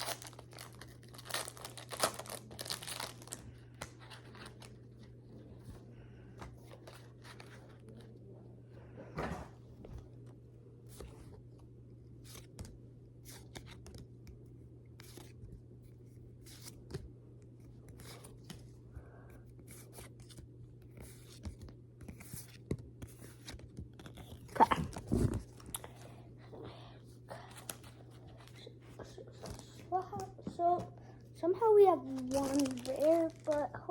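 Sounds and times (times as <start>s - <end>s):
trading cards rustling: 0.0s - 5.2s, 31.6s - 33.9s
low steady hum: 0.0s - 33.9s.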